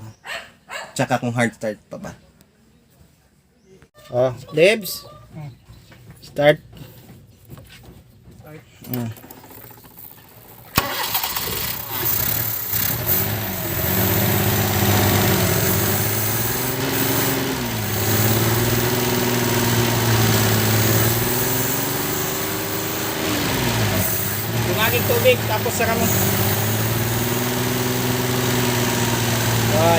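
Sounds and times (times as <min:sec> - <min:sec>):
car engine starter cranking: 0:08.9 - 0:27.6
car engine revving: 0:10.8 - 0:29.9.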